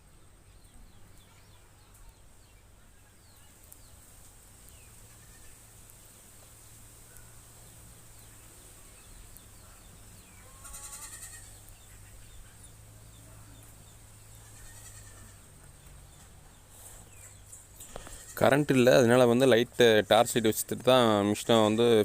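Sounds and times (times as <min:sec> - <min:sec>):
faint chirps: 0:00.0 - 0:20.2
wavering animal cry: 0:10.4 - 0:12.1, 0:14.4 - 0:15.4.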